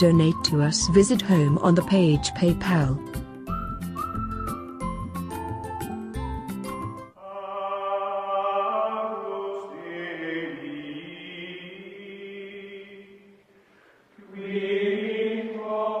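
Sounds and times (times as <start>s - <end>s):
choir-like chanted tones: 7.2s - 13.4s, 14.2s - 16.0s.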